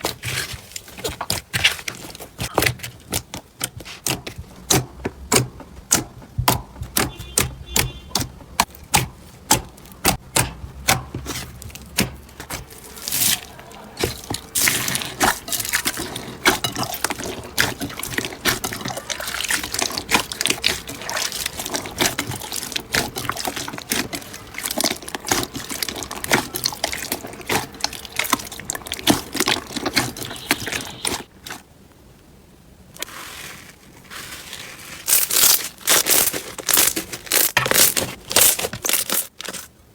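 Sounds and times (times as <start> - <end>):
slime squeezed by hand: 17.3 - 31.3.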